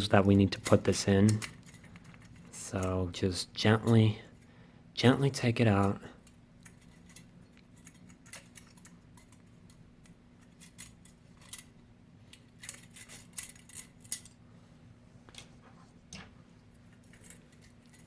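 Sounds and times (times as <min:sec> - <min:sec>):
metallic clicks of small parts: 0:00.2 - 0:03.0, 0:05.8 - 0:11.7, 0:12.3 - 0:14.4.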